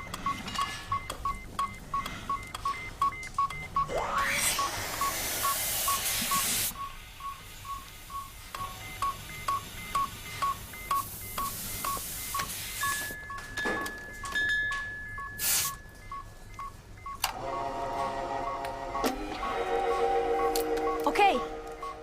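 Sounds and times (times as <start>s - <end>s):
hospital monitor beeping: 0.0s - 22.0s
steady high tone: 3.9s - 6.5s, 17.4s - 22.0s.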